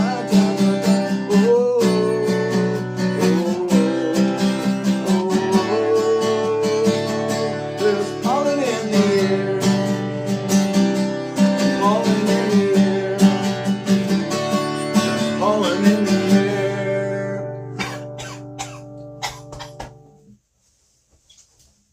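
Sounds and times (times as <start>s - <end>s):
wordless singing: 0.0s - 10.3s, 11.4s - 17.6s
acoustic guitar strumming: 0.0s - 20.3s.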